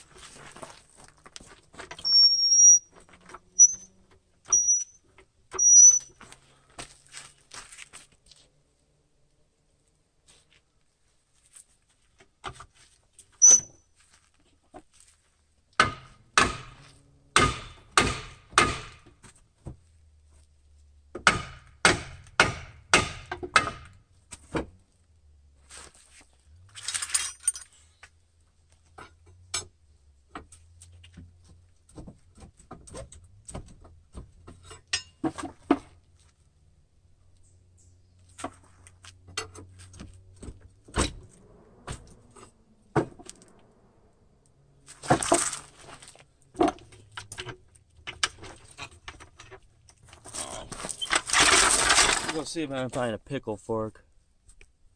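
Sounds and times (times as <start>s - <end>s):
light metal clinks and knocks: 26.7s - 28.1s, 34.5s - 35.4s.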